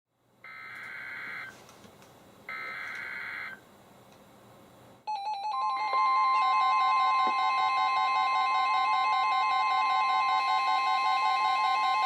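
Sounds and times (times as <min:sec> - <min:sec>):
beeping radio alarms: 0:05.1 - 0:12.0.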